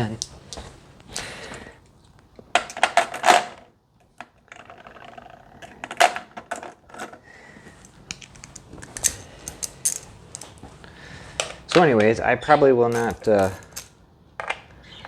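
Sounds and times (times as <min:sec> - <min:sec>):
small hard parts clicking: 0:07.8 - 0:10.6, 0:12.9 - 0:14.8.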